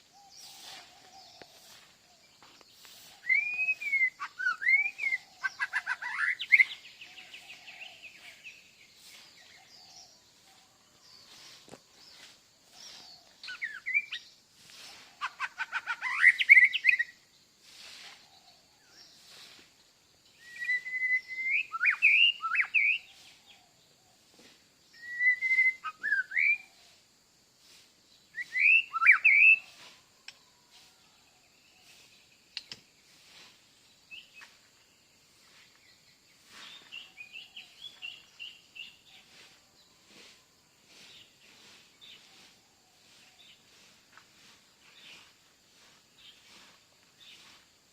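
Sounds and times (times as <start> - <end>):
songbird singing whistled phrases: 3.0 - 10.0, 12.9 - 14.3, 15.5 - 17.2, 20.4 - 23.6, 24.9 - 26.9, 28.3 - 30.0.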